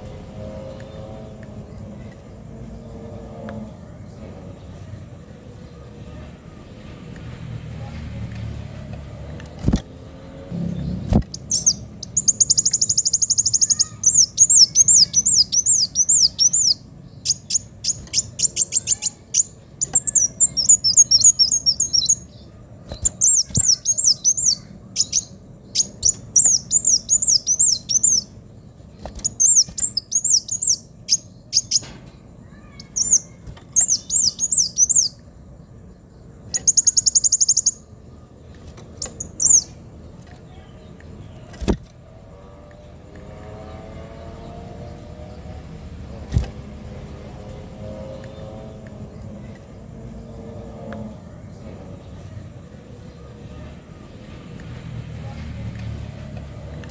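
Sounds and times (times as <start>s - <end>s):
bird chirping song: 8.8s - 56.9s
buzzy bird trill: 10.5s - 35.4s, 36.5s - 38.0s, 38.8s - 39.9s.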